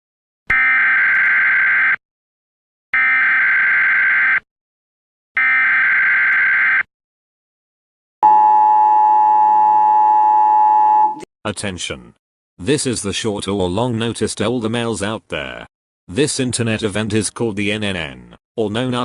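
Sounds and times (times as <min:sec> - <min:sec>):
two-tone alert signal: 0:08.2 - 0:11.2.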